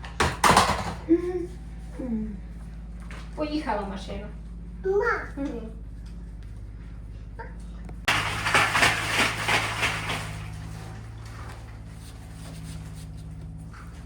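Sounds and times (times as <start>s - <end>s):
clattering and rattling: 0.0s - 1.1s
low engine hum: 1.0s - 14.0s.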